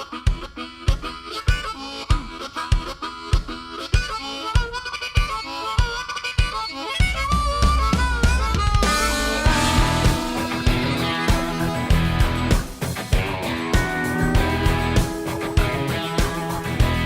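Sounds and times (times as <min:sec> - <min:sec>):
country song: 0:08.8 - 0:17.0.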